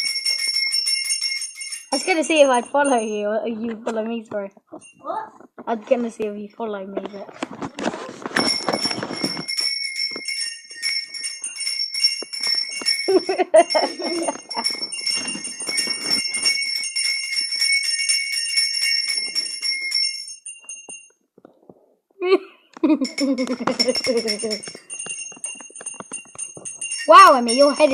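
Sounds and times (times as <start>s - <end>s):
small bell jingling rapidly: 0.0s - 3.6s, 8.2s - 21.2s, 22.9s - 27.9s.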